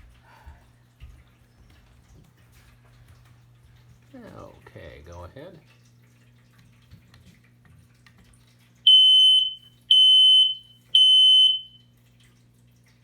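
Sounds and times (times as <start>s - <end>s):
smoke detector beeps: 8.9s - 11.8s.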